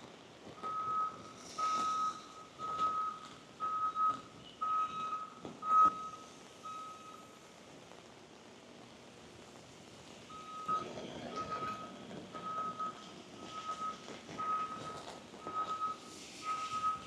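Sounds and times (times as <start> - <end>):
truck reversing alarm beeping: 0.6 - 7.4, 10.3 - 17.0.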